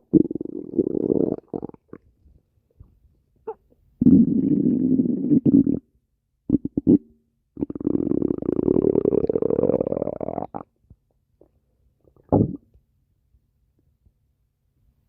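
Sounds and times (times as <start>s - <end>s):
stomach growling: 0.0s - 2.1s, 7.6s - 10.7s, 12.1s - 12.6s.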